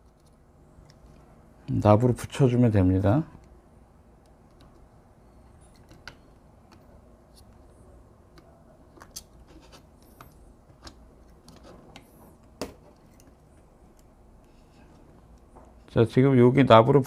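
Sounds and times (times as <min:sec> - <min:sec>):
faint clicks and taps of tools: 0:04.2 - 0:04.9, 0:08.3 - 0:15.9.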